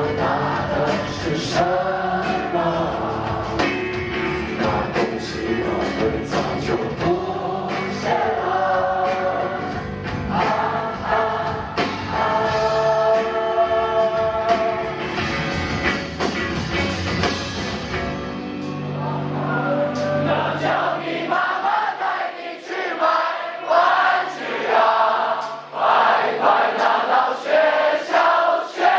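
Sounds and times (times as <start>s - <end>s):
crowd singing together: 0.0s - 15.7s, 18.6s - 28.9s
live rock band playing: 0.0s - 20.7s.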